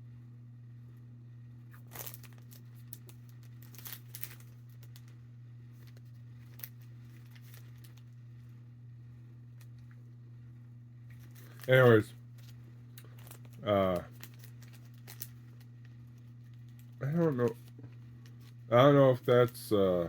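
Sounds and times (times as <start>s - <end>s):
steady low hum: 0.0s - 20.0s
plastic wrapper crinkling: 1.7s - 5.2s, 5.8s - 8.1s, 11.2s - 18.7s.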